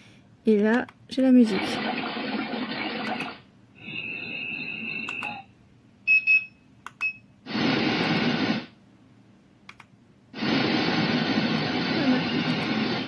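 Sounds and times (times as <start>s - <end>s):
steady hiss: 10.4s - 13.0s.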